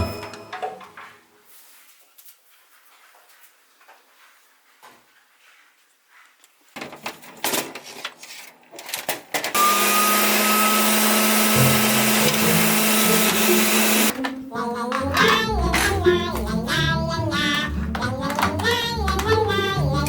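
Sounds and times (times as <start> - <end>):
vacuum cleaner running: 9.6 - 14.1.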